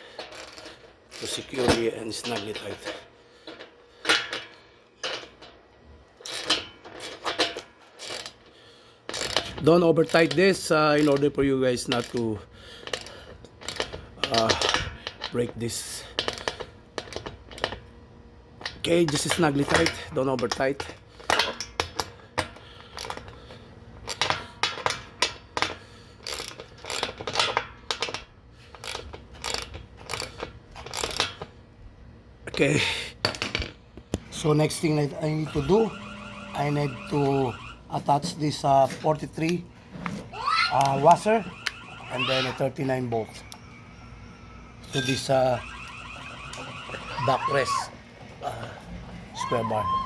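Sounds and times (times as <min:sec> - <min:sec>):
socket and ratchet clinking: 0:06.2 - 0:08.5, 0:09.1 - 0:10.4, 0:24.0 - 0:31.5.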